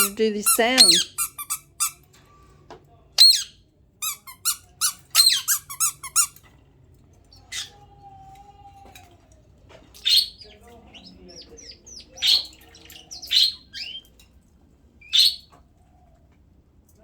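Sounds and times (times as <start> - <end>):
budgerigars squeaky chirping: 0.0 - 2.0, 3.2 - 6.3, 10.0 - 14.1, 15.0 - 15.5
bird whistle: 3.2 - 3.5.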